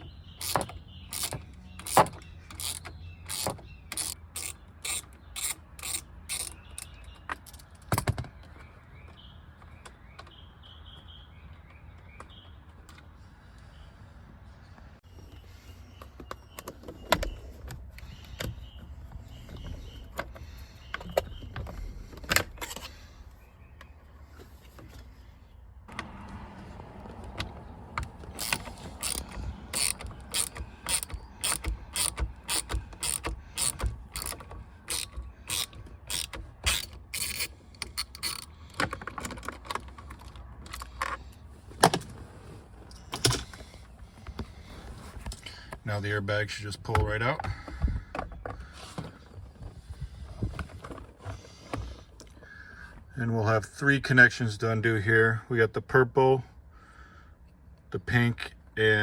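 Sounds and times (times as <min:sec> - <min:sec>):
ratchet wrench clicking: 0:00.4 - 0:07.6, 0:28.3 - 0:38.5.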